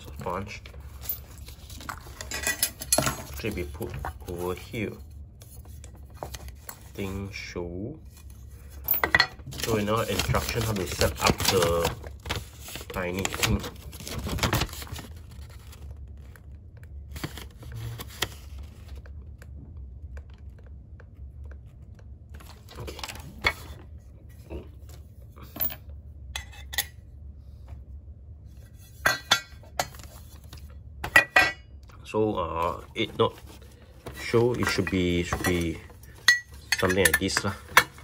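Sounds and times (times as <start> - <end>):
steady low hum: 0.0 - 38.0
metal parts clinking and knocking: 1.0 - 3.4, 8.8 - 9.4.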